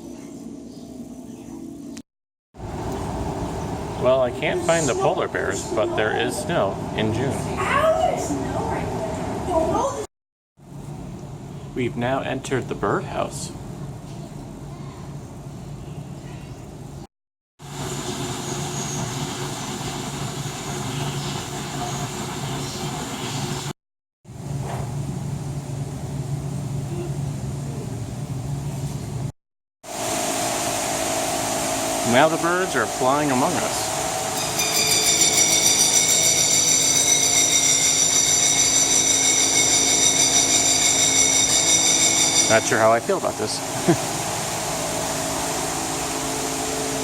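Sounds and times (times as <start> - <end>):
low mechanical hum: 2.6 - 10.0, 10.6 - 17.1, 17.7 - 23.7, 24.3 - 29.3, 30.0 - 47.0
machinery drone: 32.0 - 47.0
high-pitched whine: 32.8 - 43.7.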